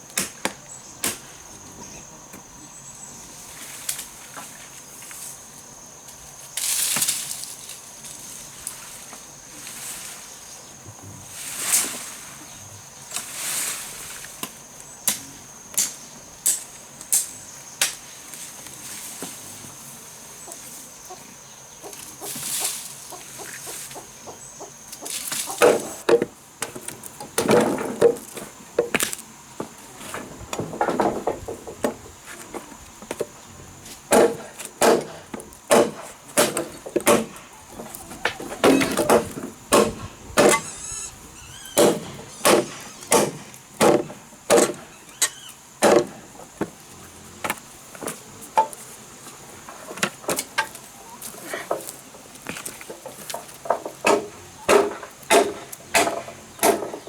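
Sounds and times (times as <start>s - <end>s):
axe chopping wood: 34.1s - 37.4s, 38.6s - 40.6s, 41.8s - 44.8s, 54.0s - 57.0s.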